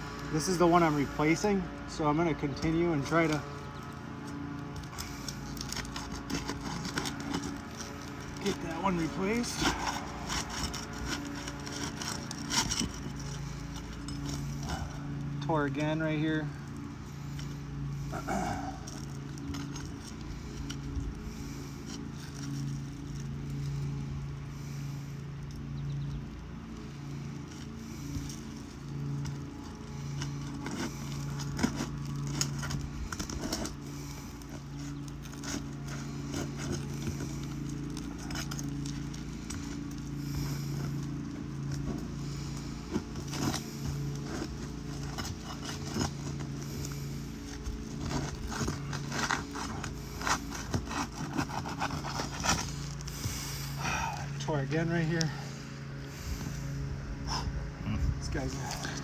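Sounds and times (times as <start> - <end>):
hand tools scraping under shingles: 0.0 - 59.0
low pulsing machine hum: 0.0 - 59.0.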